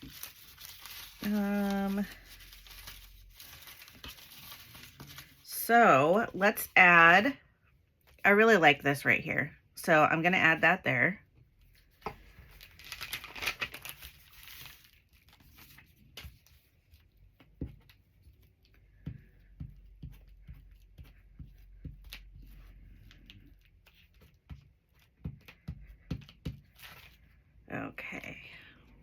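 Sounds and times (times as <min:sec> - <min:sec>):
paper rustling: 0:00.0 - 0:05.5, 0:11.7 - 0:18.8, 0:26.4 - 0:27.3.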